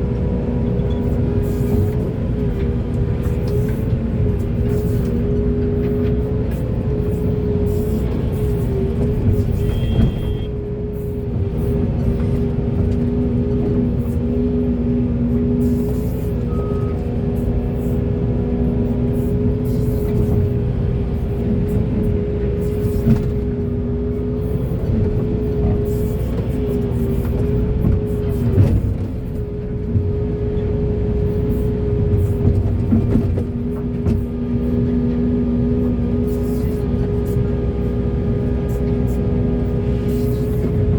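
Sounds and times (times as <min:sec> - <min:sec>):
excavator diesel engine rumble: 0:00.0 - 0:40.9
machinery whine: 0:00.0 - 0:40.9
hydraulic whine: 0:09.3 - 0:11.7.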